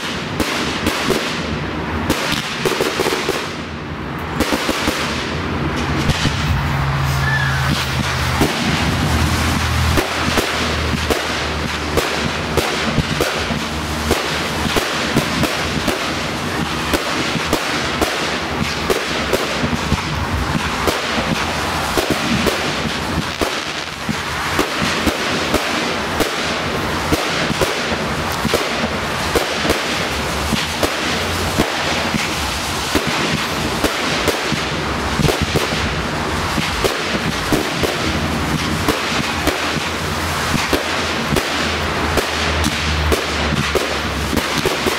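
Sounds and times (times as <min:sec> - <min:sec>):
fireworks bangs: 0:00.0 - 0:44.9
fireworks crackling: 0:00.0 - 0:44.9.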